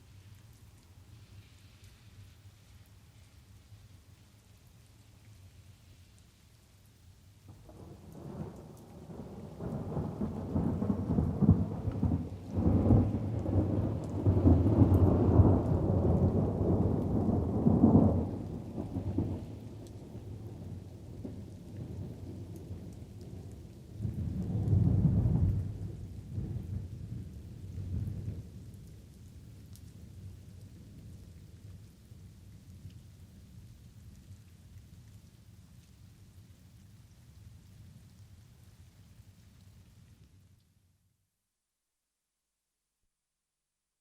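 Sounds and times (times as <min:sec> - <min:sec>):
light rain: 0:00.0 - 0:41.6
rolling thunder: 0:07.7 - 0:19.5.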